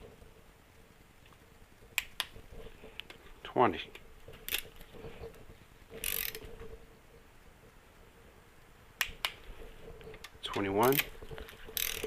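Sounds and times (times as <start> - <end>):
faint steady hum: 0.0 - 12.0
torque wrench clicks: 6.0 - 6.4, 11.7 - 12.0.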